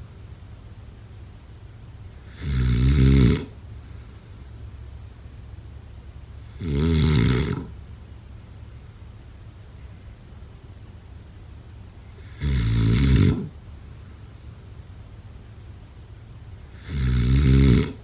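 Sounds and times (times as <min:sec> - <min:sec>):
person snoring rattling: 0:02.2 - 0:03.6, 0:06.5 - 0:07.8, 0:12.2 - 0:13.6, 0:16.7 - 0:18.0.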